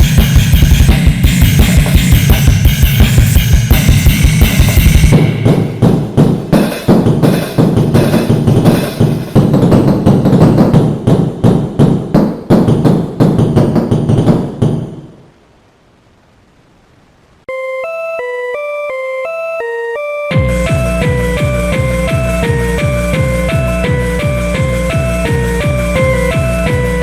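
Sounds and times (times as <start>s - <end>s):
drum-heavy electronic track: 0.0s - 14.8s, 20.3s - 27.0s
plinking electronic melody: 17.5s - 27.0s.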